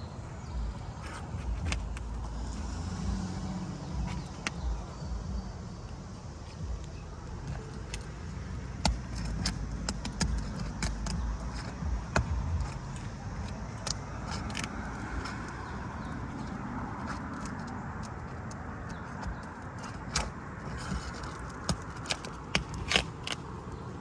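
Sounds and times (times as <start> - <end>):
low rumble: 0.0 - 14.3
metal tool clicking and scraping: 7.4 - 23.4.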